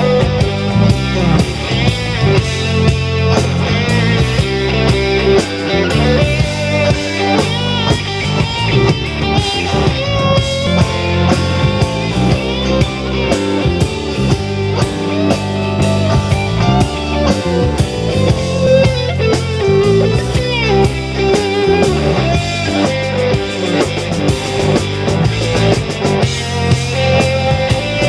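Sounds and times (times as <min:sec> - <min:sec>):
blues-rock guitar lead: 0:00.0 - 0:28.0
drum kit beat: 0:00.0 - 0:28.0.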